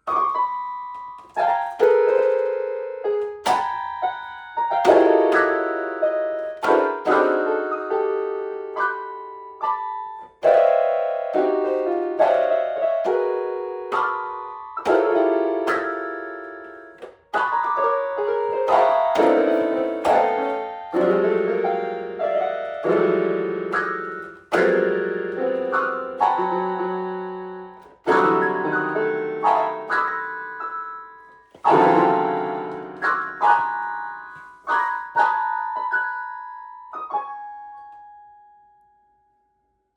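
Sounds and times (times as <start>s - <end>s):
piano music: 0.0s - 39.2s.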